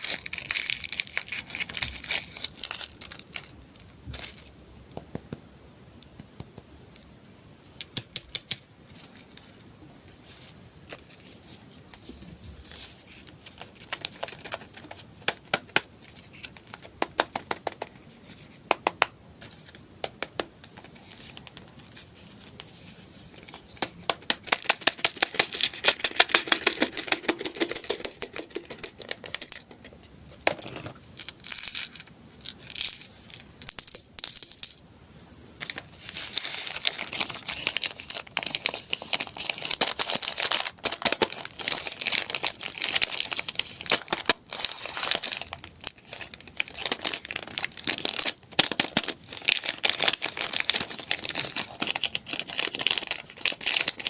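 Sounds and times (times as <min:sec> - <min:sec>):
candy wrappers crinkling: 0:00.0 - 0:04.6, 0:13.1 - 0:17.8, 0:23.3 - 0:34.8, 0:35.6 - 0:54.0.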